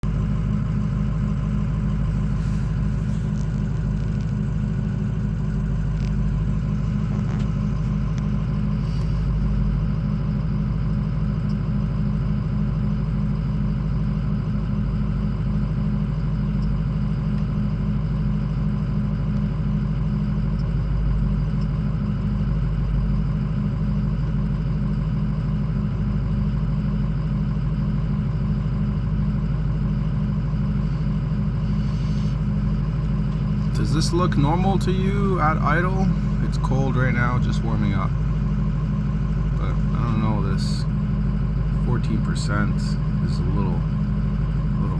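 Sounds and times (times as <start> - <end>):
diesel engine idling rough: 0.0 - 44.9.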